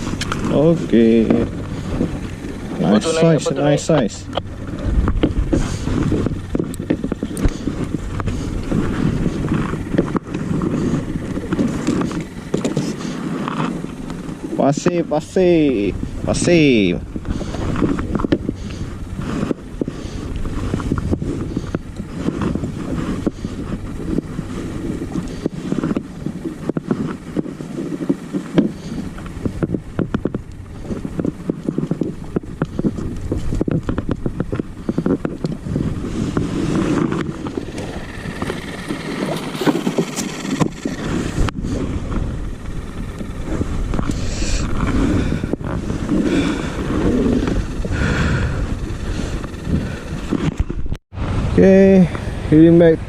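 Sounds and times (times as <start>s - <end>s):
wind buffeting microphone: 0.0s - 53.0s
water slapping a kayak hull: 15.9s - 50.7s.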